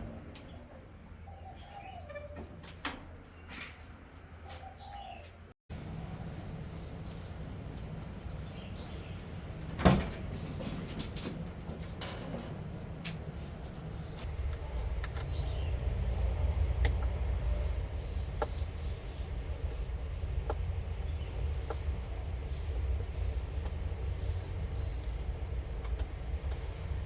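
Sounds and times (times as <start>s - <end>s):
bird chirping: 0.4s - 2.4s, 4.4s - 5.4s, 6.4s - 7.5s, 13.3s - 15.8s, 16.7s - 20.0s, 21.1s - 23.6s, 24.2s - 26.5s
steady low rumble: 5.7s - 27.0s.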